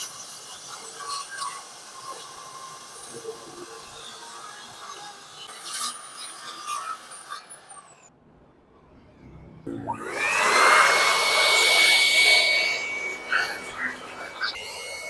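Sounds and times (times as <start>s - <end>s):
saw motor whining: 9.6s - 15.0s.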